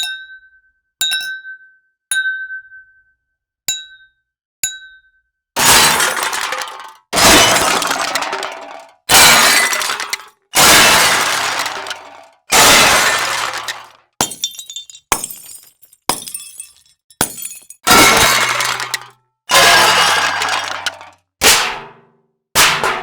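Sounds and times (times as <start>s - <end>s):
glass breaking: 5.6s - 21.2s.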